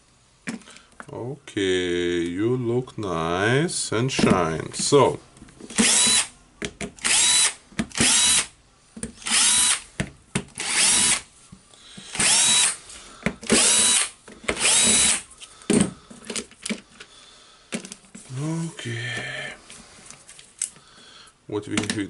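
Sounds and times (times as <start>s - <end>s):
electric screwdriver whining: 5.7s - 6.3s, 7.0s - 8.5s, 9.2s - 9.8s, 10.6s - 11.3s, 12.1s - 12.8s, 13.4s - 15.3s.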